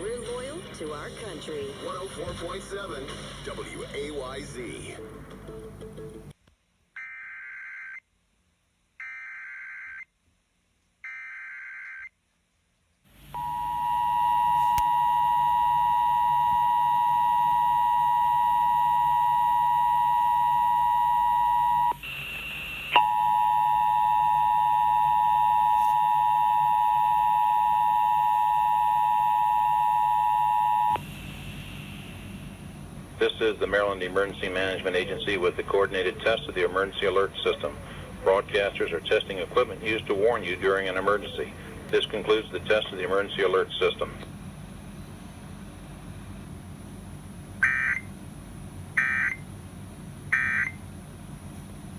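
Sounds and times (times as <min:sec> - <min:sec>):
two-tone attention signal: 0:13.4 - 0:31.0.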